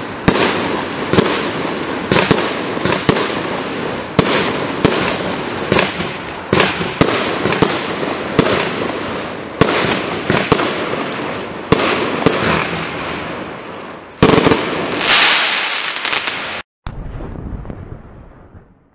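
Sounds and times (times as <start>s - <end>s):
firework battery bangs: 0.0s - 11.1s
hiss of burning fireworks: 0.0s - 16.7s.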